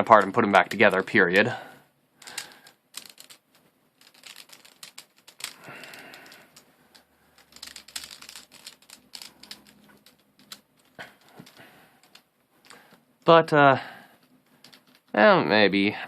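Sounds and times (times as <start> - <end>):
plastic puzzle pieces clicking: 2.2 - 13.0, 14.2 - 15.2.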